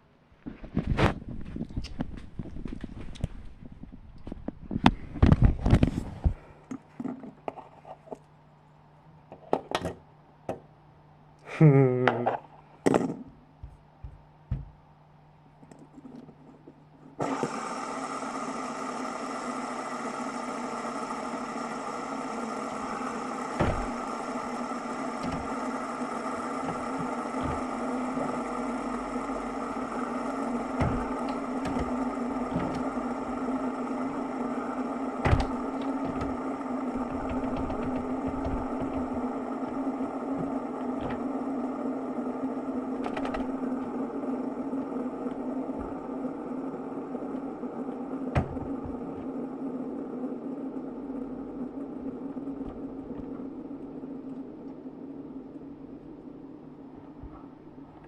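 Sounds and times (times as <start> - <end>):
small motor whirring: 17.2 - 55.1.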